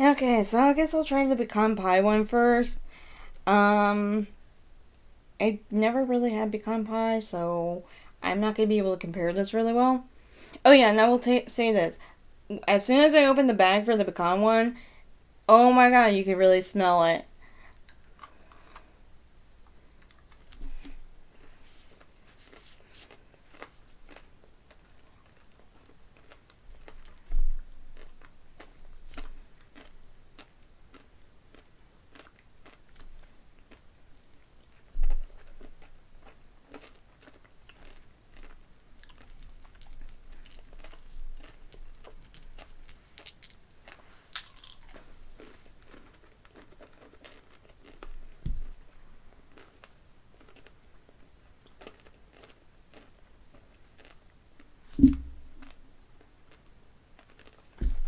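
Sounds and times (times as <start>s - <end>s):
chewing and crunching candy: 17.5s - 54.8s, 55.6s - 57.9s
thumps: 54.9s - 55.7s, 57.8s - 58.0s.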